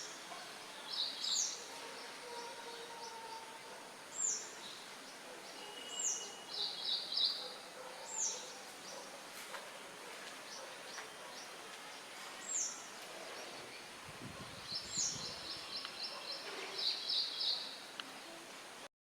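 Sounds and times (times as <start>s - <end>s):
faint outdoor hiss: 0.0s - 18.9s
small birds chirping: 10.4s - 18.3s.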